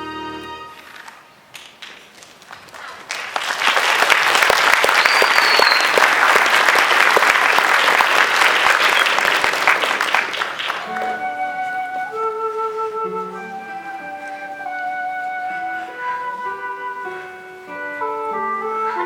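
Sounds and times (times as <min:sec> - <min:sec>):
audience applauding: 0:00.9 - 0:11.4
short high whistle from crowd: 0:04.9 - 0:06.0.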